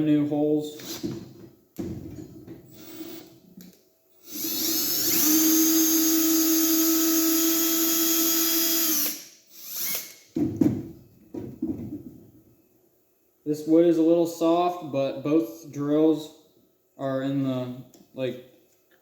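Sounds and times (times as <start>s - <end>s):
cordless drill motor whining: 0.7s - 1.2s, 4.2s - 10.2s
knocks: 10.3s - 12.2s.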